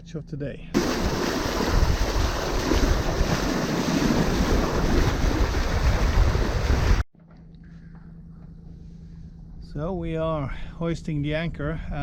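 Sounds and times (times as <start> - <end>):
waves and rushing water: 0.8 - 7.0
wind buffeting microphone: 0.8 - 7.0.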